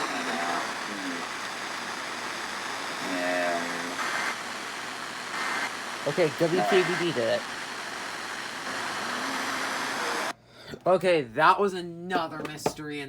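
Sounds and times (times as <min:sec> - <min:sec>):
faint voice: 0:00.0 - 0:01.4, 0:03.0 - 0:04.0
steady hiss: 0:00.0 - 0:10.3.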